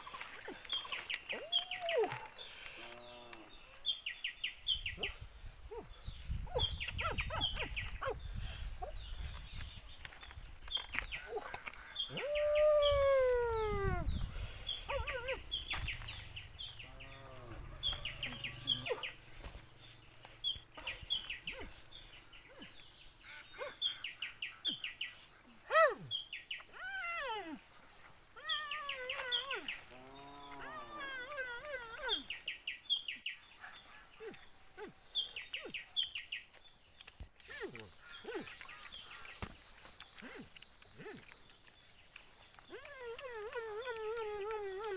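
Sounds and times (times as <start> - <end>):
birds chirping and calling: 0.0 - 25.4.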